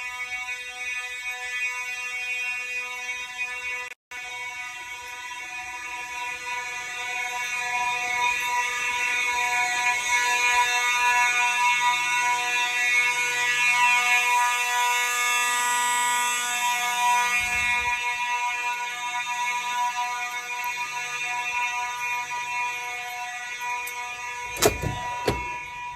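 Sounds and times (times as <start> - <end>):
fire alarm bell ringing: 0.0 - 25.9.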